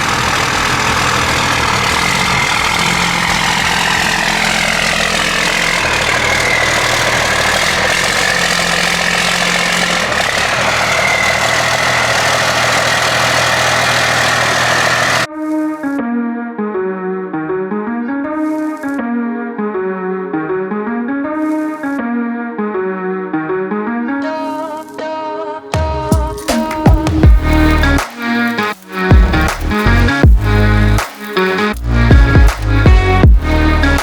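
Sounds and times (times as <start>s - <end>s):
diesel engine running: 0.0s - 15.3s, 25.8s - 34.0s
guitar music: 14.2s - 34.0s.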